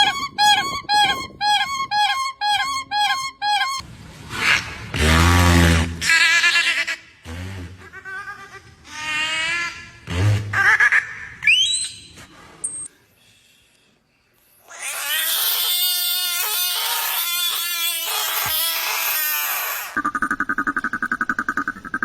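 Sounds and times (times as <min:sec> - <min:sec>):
high wailing animal call: 0:00.0 - 0:03.8, 0:14.7 - 0:20.0
animal squeals and squeaks: 0:14.6 - 0:20.1.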